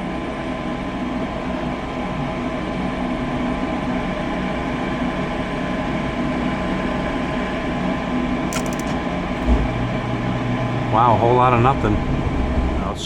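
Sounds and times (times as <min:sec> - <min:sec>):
furnace motor humming: 0:08.6 - 0:10.8.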